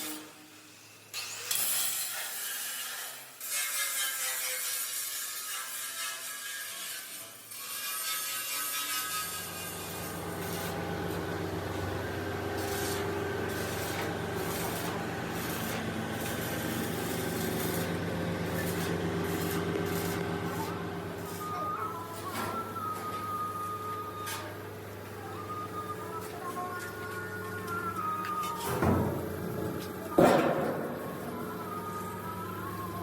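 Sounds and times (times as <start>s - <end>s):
metal rasping and scraping: 1.2s - 33.0s
machine humming: 9.1s - 33.0s.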